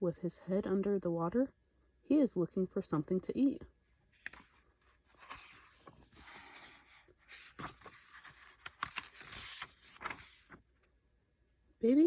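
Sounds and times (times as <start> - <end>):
paper page turning: 4.1 - 10.9.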